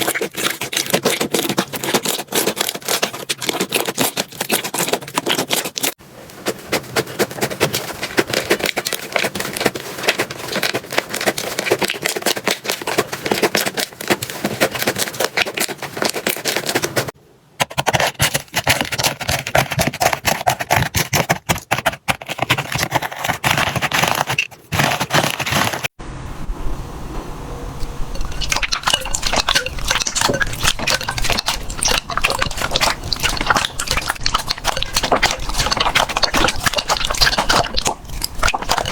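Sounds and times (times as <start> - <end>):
slime crackling and popping: 28.2 - 38.9.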